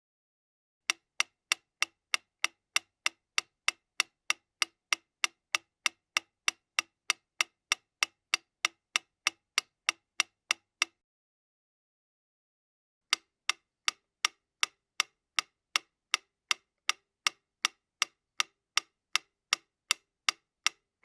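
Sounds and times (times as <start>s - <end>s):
mechanical metronome ticking: 0.9s - 11.0s, 13.1s - 20.9s.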